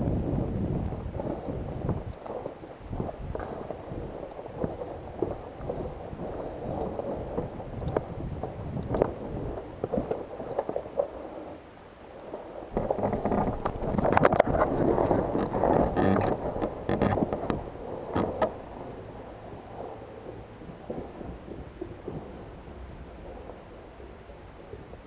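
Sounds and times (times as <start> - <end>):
sharp clicks and knocks: 15.3 - 18.6.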